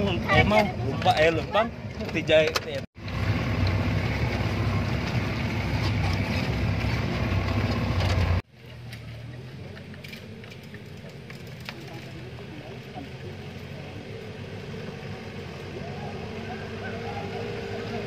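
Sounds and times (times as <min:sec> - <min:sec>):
vehicle engine rumbling: 0:00.0 - 0:18.0
low engine hum: 0:03.0 - 0:18.0.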